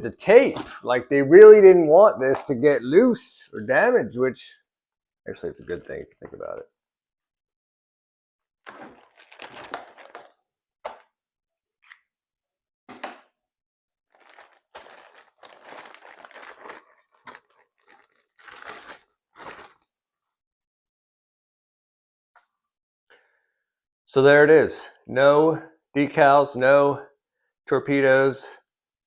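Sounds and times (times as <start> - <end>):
packing tape peeling and tearing: 8.7 - 10.3, 14.2 - 19.8
packaging crinkling: 8.7 - 10.4, 14.1 - 19.9.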